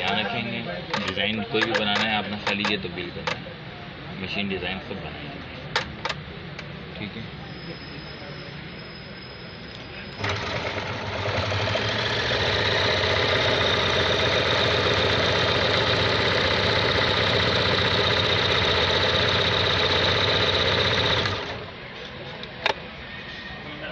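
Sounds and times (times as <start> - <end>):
sewing machine running: 10.2 - 21.7.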